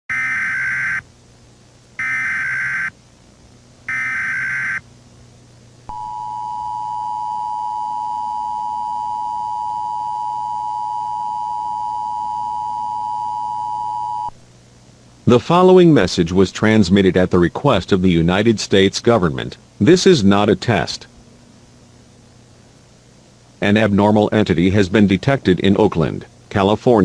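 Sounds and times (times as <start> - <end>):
two-tone attention signal: 5.9 - 14.3.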